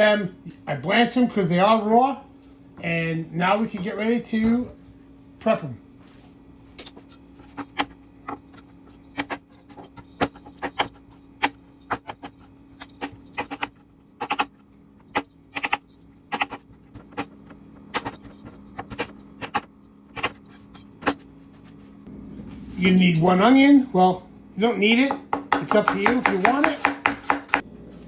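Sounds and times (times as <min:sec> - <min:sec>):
knife cutting on cutting board: 0:06.8 - 0:19.6, 0:20.2 - 0:21.8, 0:25.6 - 0:27.6.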